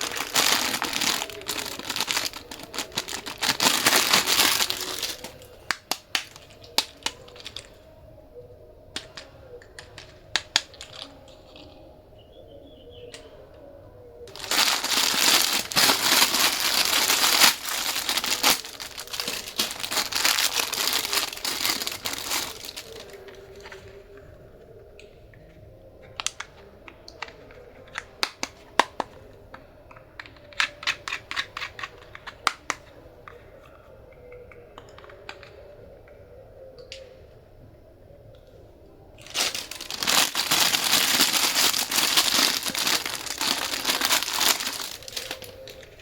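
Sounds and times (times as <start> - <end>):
wrapping crinkling and tearing: 0.0 - 7.8, 10.0 - 11.8, 14.3 - 24.2, 39.2 - 46.0.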